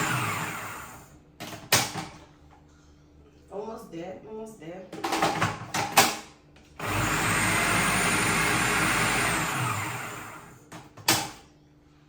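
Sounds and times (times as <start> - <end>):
food processor running: 0.0 - 1.2, 6.8 - 10.6.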